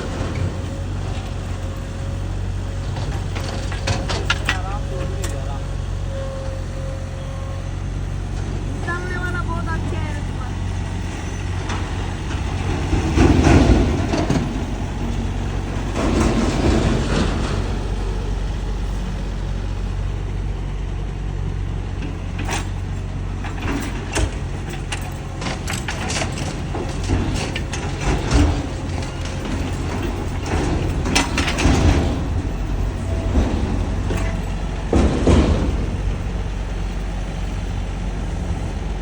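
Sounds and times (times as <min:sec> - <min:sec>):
metallic clanks and knocks: 0:00.0 - 0:07.6, 0:22.0 - 0:37.8
excavator engine running: 0:00.0 - 0:39.0.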